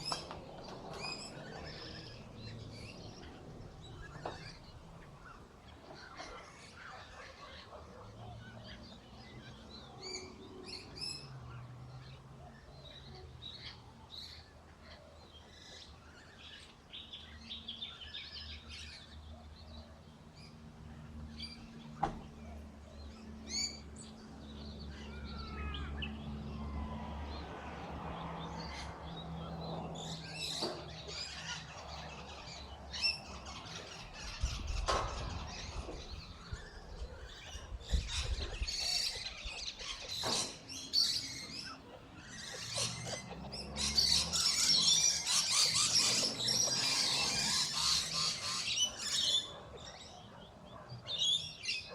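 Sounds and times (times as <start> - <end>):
birds chirping: 0.0 - 51.9.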